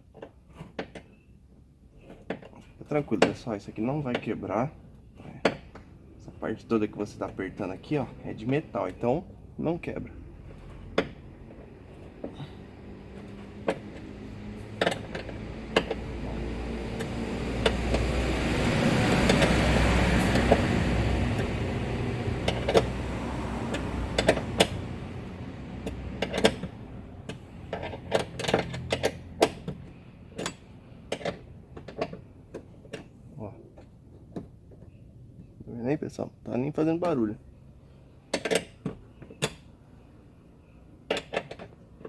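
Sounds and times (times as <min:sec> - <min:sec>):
passing vehicle: 0:02.8 - 0:36.2
wrench clicking on metal: 0:23.7 - 0:24.8.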